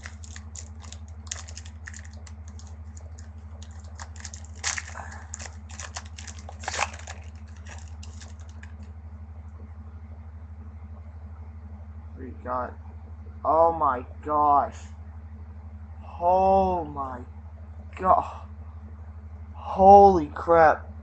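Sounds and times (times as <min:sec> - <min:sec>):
foil wrapper crinkling: 0:00.0 - 0:08.9
steady low hum: 0:00.0 - 0:21.0.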